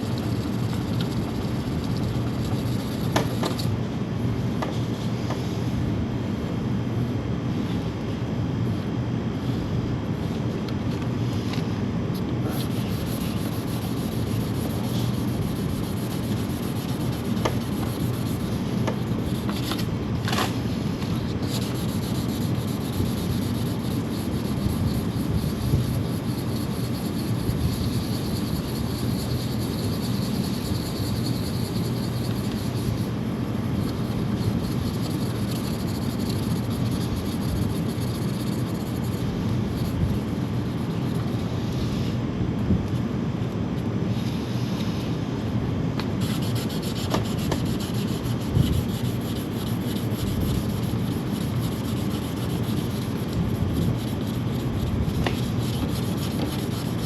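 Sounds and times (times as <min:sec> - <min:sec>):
sandpaper rubbing on painted metal: 0:00.0 - 0:03.7, 0:12.4 - 0:19.9, 0:21.1 - 0:41.4, 0:46.2 - 0:57.0.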